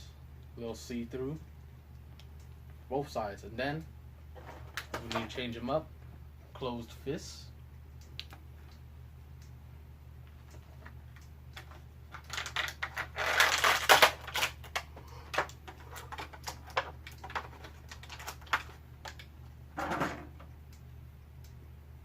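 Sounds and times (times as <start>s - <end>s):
steady low hum: 0.0s - 22.0s
plastic parts clicking and tapping: 10.3s - 20.5s.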